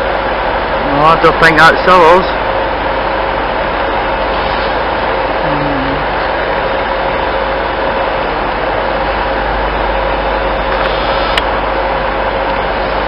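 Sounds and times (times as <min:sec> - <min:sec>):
electric train humming and whining: 0:00.0 - 0:13.0.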